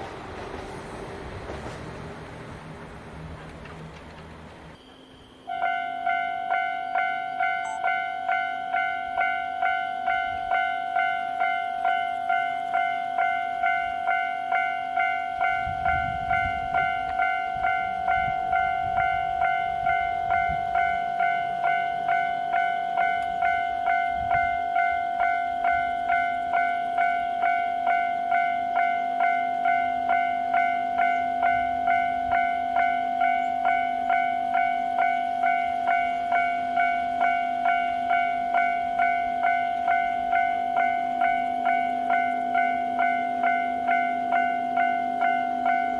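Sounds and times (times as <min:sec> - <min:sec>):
level crossing bell dinging: 0:04.8 - 0:45.9.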